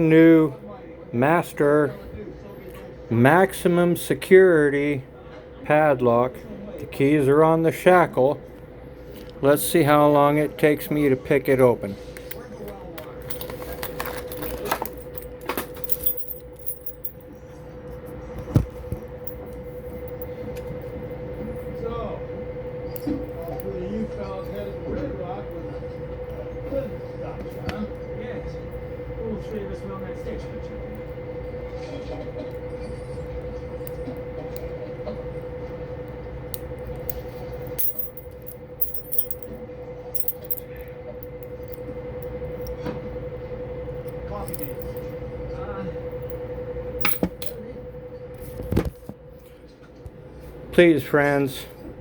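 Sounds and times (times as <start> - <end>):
steady low hum: 0.0 - 52.0
keys jingling: 13.2 - 17.3, 37.6 - 39.5, 40.2 - 40.7, 44.4 - 45.1, 47.0 - 47.6.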